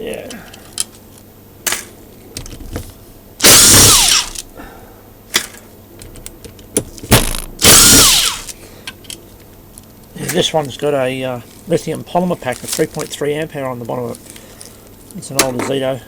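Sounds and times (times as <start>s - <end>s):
impact driver whine: 3.4s - 4.4s, 7.2s - 8.5s
tool and metal clicks: 3.4s - 4.5s, 7.2s - 8.6s.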